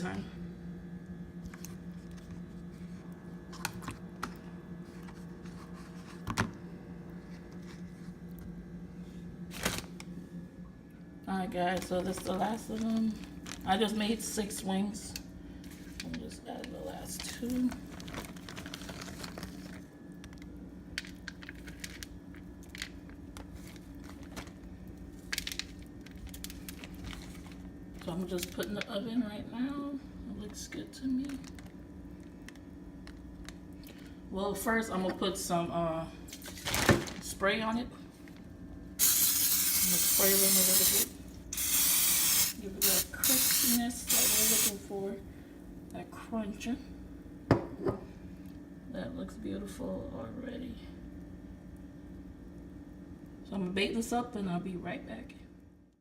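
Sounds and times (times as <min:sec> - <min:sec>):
steady low hum: 0:00.0 - 0:56.0
dry crackles of corn flakes: 0:17.1 - 0:20.4, 0:25.2 - 0:28.6.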